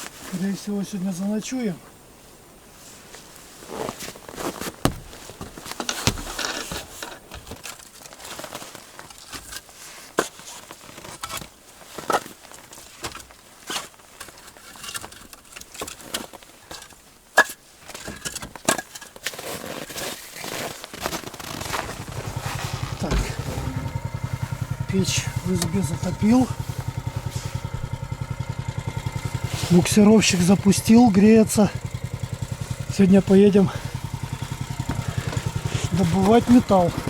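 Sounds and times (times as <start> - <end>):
firewood knocking and clattering: 4.6 - 7.8, 21.9 - 29.6
fire crackling: 21.4 - 37.0.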